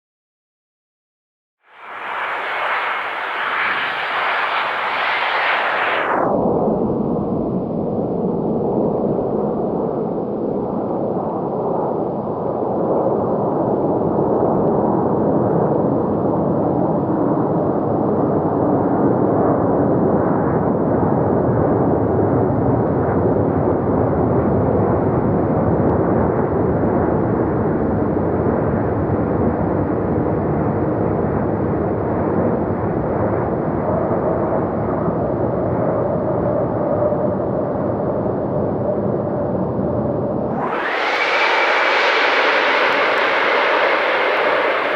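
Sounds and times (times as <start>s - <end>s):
jet airliner deep rushing: 1.7s - 6.9s, 40.4s - 44.9s
faint steady tone: 40.6s - 44.9s.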